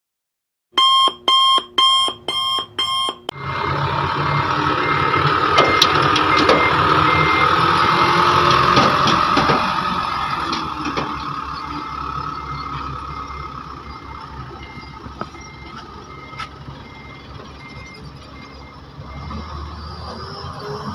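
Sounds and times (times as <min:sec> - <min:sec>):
truck reversing alarm: 0:00.8 - 0:20.9
heavy diesel engine running: 0:03.3 - 0:20.9
loud electronic beeps: 0:04.2 - 0:08.7, 0:10.1 - 0:20.9
clanks: 0:08.4 - 0:11.8.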